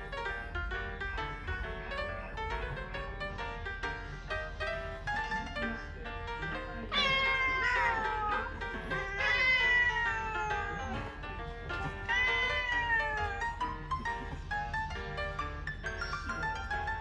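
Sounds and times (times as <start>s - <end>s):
plucked background music: 0.0s - 17.0s
cat yowling: 6.8s - 14.5s.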